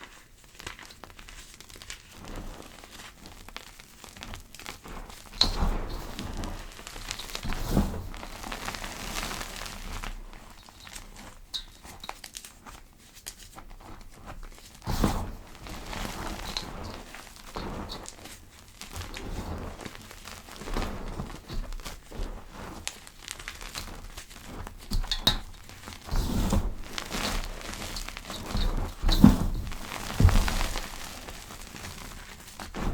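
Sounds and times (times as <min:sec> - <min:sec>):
powder crunching and crackling: 0:00.0 - 0:32.9.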